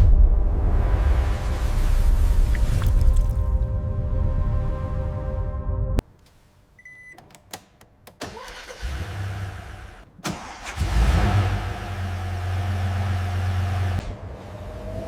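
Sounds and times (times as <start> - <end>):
car engine starting and idling: 7.2 - 14.6.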